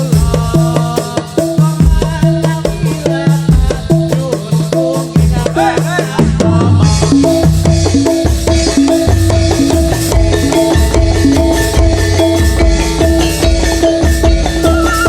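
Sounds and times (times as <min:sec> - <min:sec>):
drums beating steady rhythm: 0:00.0 - 0:15.0
rattling percussion: 0:00.0 - 0:15.0
pitched melodic notes: 0:07.0 - 0:15.0.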